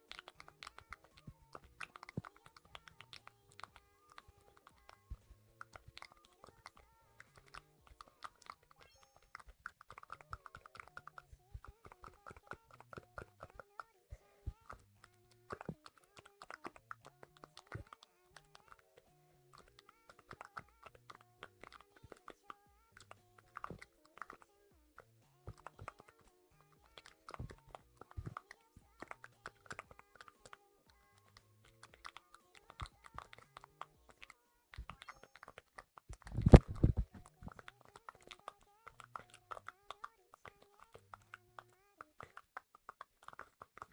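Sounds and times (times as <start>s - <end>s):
faint background music: 0.0s - 43.9s.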